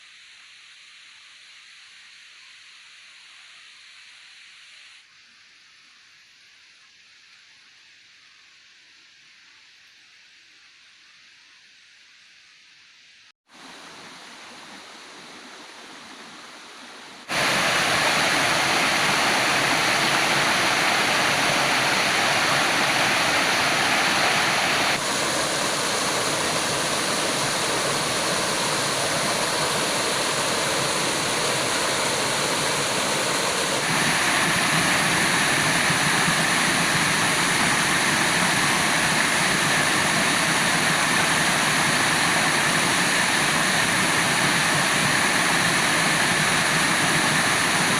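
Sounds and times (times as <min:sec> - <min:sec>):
waterfall rushing: 0:13.6 - 0:47.9.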